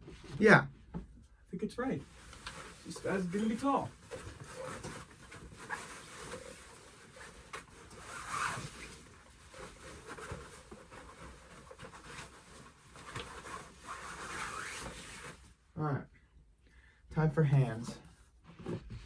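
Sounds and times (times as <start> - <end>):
cloth and plastic rustling: 1.8 - 15.6.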